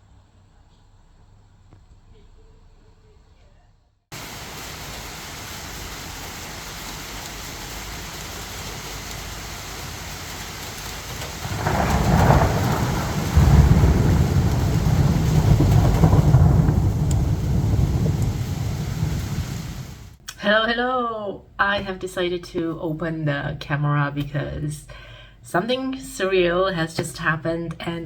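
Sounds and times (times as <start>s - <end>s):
rain hissing: 4.1s - 20.2s
thunder rumbling: 4.1s - 20.2s.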